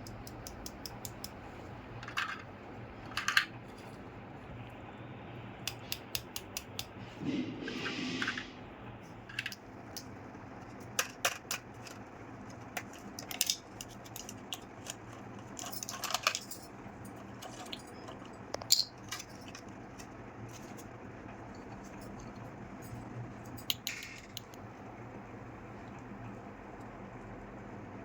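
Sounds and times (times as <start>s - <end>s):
toy kitchen pieces clicking: 0.0s - 1.4s, 10.8s - 16.7s, 17.3s - 20.8s, 23.6s - 24.6s.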